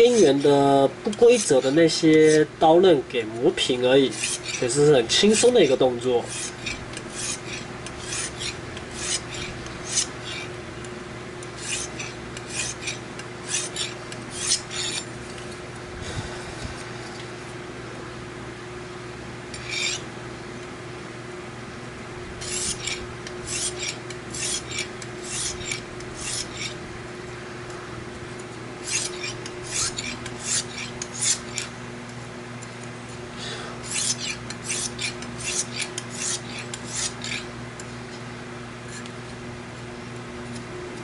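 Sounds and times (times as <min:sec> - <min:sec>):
hone scraping knife edge: 0:00.0 - 0:02.5, 0:03.4 - 0:10.6, 0:11.4 - 0:15.4, 0:19.5 - 0:20.1, 0:22.4 - 0:26.8, 0:28.8 - 0:31.7, 0:33.8 - 0:37.5, 0:38.8 - 0:39.1.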